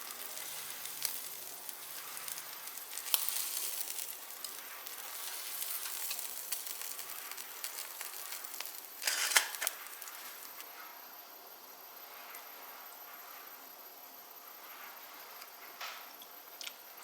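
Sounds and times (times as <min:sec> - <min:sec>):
food sizzling on a grill: 0:00.0 - 0:10.7.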